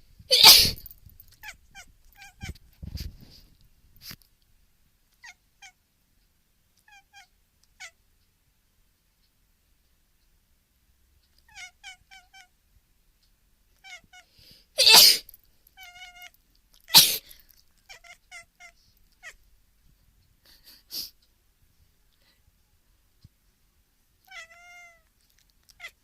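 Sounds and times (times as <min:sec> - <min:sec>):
person sneezing: 0:00.3 - 0:00.9, 0:14.8 - 0:15.4, 0:16.9 - 0:17.4
cat chirping meows: 0:00.3 - 0:02.6, 0:05.2 - 0:05.8, 0:06.8 - 0:08.0, 0:11.4 - 0:12.5, 0:13.8 - 0:19.4, 0:24.2 - 0:26.0.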